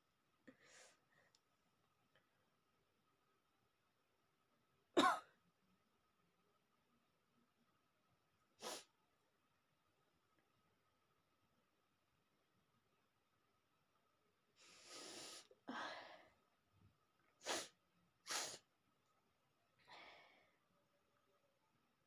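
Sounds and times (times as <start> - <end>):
person breathing: 14.6 - 16.4, 19.8 - 20.6
person sneezing: 17.4 - 18.6.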